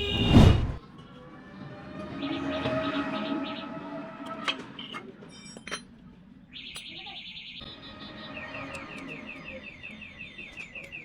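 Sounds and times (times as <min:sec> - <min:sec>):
bike electric horn beeping: 0:00.0 - 0:00.4.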